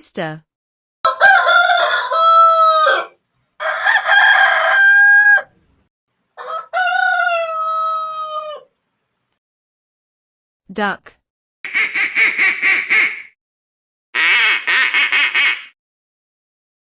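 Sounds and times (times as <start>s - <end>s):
rooster crowing: 1.0s - 5.6s, 6.4s - 8.7s.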